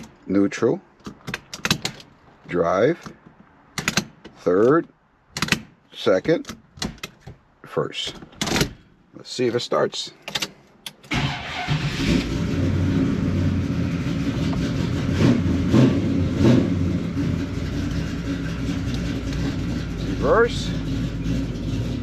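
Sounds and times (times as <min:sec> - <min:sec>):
car engine starting and running: 0:10.3 - 0:22.0.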